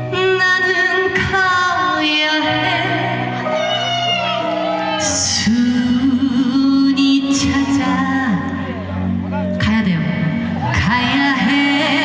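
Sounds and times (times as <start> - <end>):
backing track music: 0.0 - 12.0
woman singing with vibrato: 0.1 - 3.5, 5.0 - 8.8, 9.6 - 12.0.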